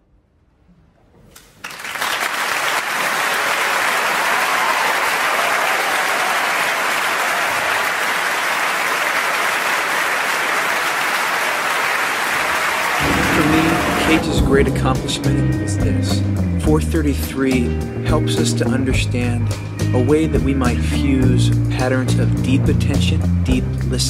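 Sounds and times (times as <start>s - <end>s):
audience applause: 1.6s - 14.4s.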